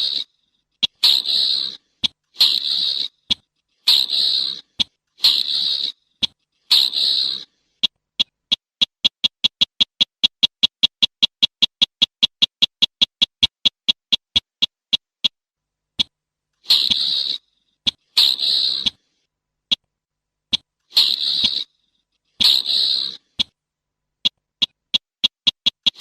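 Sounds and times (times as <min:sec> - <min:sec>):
bird calling with rasping notes: 0:00.0 - 0:15.4, 0:16.0 - 0:19.1, 0:20.5 - 0:23.6
bird sharp ticking notes: 0:00.8 - 0:15.4, 0:24.2 - 0:26.0.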